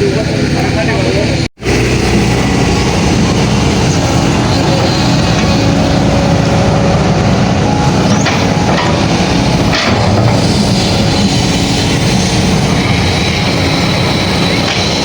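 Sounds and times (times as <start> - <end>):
diesel engine running: 0.0 - 15.0.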